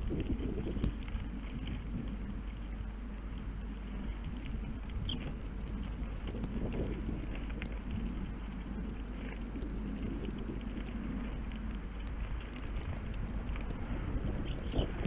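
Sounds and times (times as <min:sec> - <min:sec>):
constant low hum: 0:00.0 - 0:15.0
faint scattered ticks: 0:00.0 - 0:15.0.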